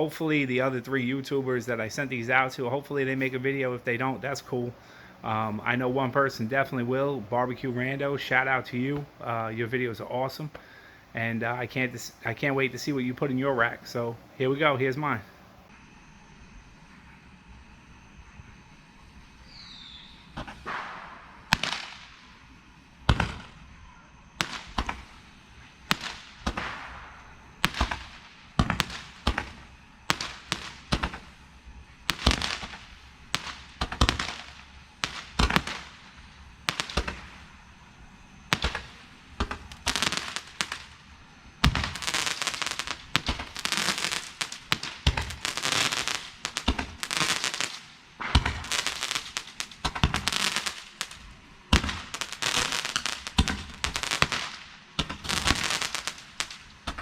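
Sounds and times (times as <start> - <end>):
fireworks crackling: 0.0 - 57.0
roman candles firing pops: 19.6 - 23.7, 24.3 - 57.0.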